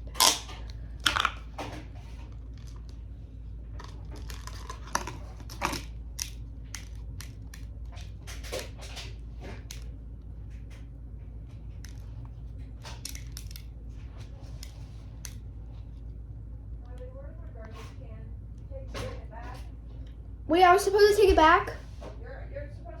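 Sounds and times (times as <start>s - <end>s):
crinkly material crackling: 0.0s - 6.1s.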